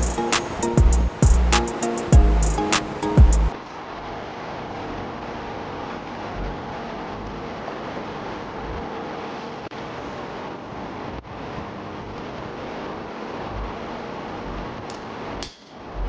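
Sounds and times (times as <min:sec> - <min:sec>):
music with drum hits: 0:00.0 - 0:03.5.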